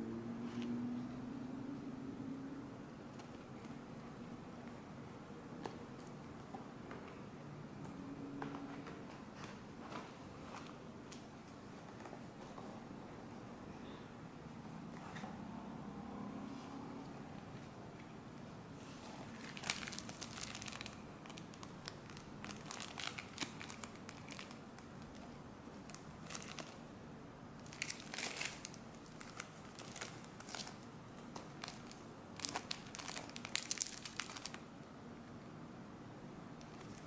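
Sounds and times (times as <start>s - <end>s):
plastic packaging crinkling: 19.2s - 26.8s, 27.6s - 34.6s, 36.6s - 37.0s.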